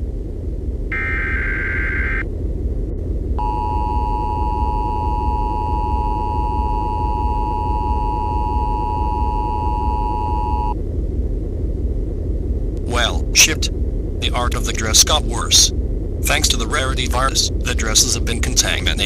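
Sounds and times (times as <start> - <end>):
low rumble: 0.0 - 19.0.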